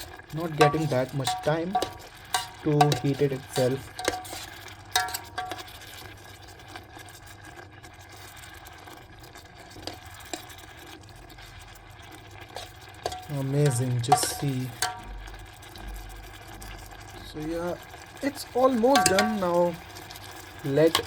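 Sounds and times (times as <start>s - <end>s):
spoon scraping kettle: 0.0s - 5.8s, 12.4s - 15.1s, 18.3s - 20.0s
faint steady sizzle: 0.0s - 21.0s.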